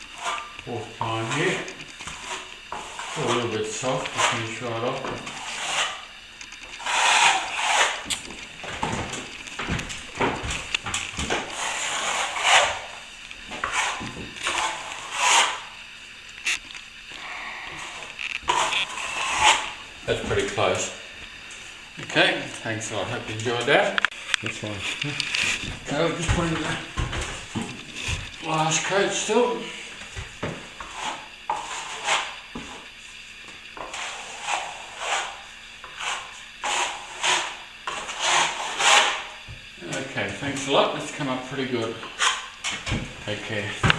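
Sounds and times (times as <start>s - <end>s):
trowel scraping plaster: 0.2s - 6.1s, 6.7s - 15.7s, 17.7s - 20.9s, 30.8s - 32.8s, 33.8s - 39.3s, 42.0s - 42.9s.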